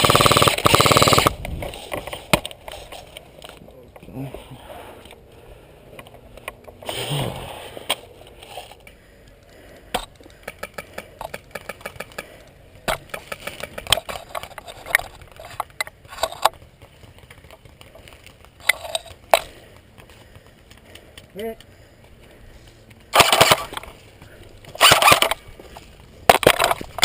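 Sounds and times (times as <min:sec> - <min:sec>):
airsoft guns firing: 0:00.0 - 0:01.4, 0:23.1 - 0:23.8, 0:24.8 - 0:25.4.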